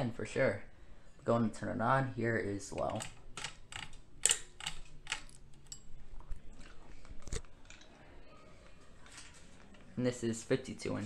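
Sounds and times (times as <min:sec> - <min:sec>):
sharp irregular clicks: 0:02.8 - 0:05.4.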